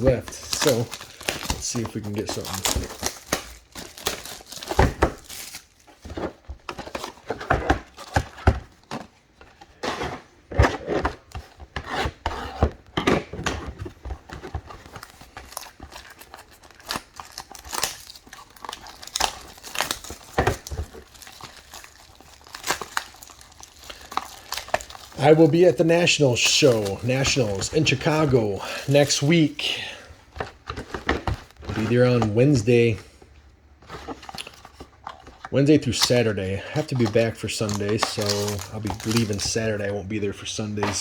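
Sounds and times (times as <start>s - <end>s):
plastic wrappers tearing and crinkling: 0.0s - 9.1s, 13.6s - 29.5s, 33.9s - 40.0s.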